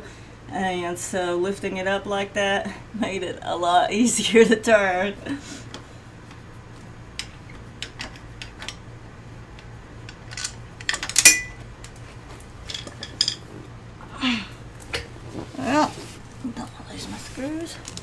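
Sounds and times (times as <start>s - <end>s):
screwdriver and screw clinking: 10.1s - 11.6s
brief metallic ring: 11.2s - 11.6s.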